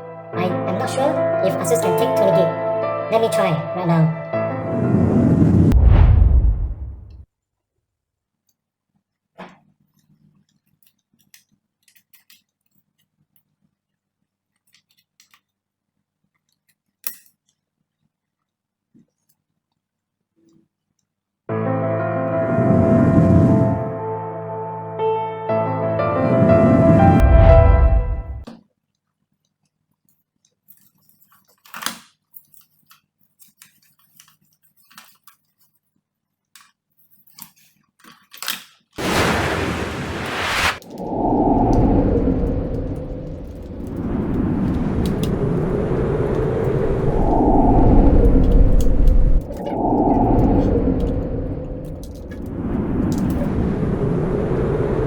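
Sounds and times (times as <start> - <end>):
loud rushing noise: 4.6 - 7.2, 26.1 - 28.4, 39.0 - 55.0
faint steady hum: 39.0 - 55.0.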